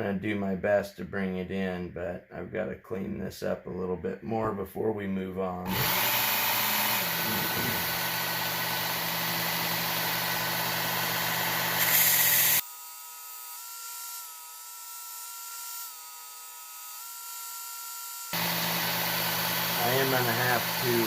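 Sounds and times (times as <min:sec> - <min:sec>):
motor hum: 0:05.7 - 0:12.6, 0:18.3 - 0:21.0
knife grinding on belt: 0:11.8 - 0:12.6.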